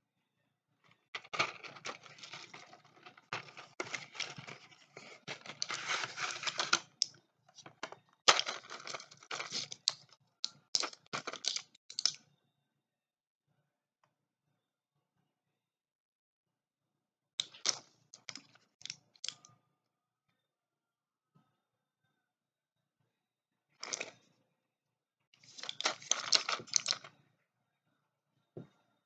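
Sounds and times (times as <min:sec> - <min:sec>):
medicine packaging rustling and clicking: 0:01.2 - 0:12.2, 0:23.8 - 0:24.1, 0:25.4 - 0:27.1.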